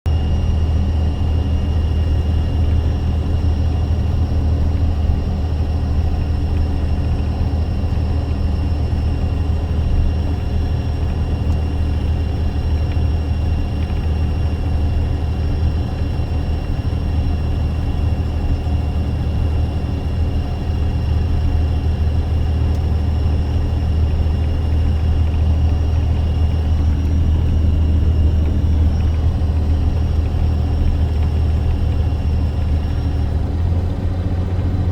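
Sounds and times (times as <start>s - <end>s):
truck engine drone in cab: 0.0s - 34.9s.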